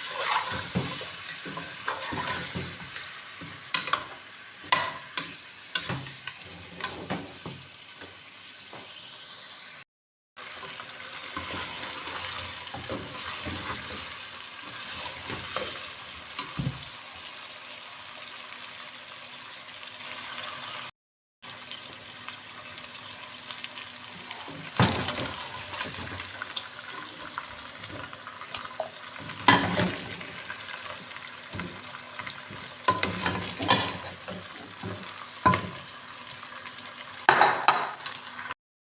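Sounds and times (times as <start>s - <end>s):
spoon clinking and scraping pot: 0.0s - 3.0s, 3.7s - 4.1s, 32.8s - 34.5s
food sizzling in a pan: 0.0s - 38.6s.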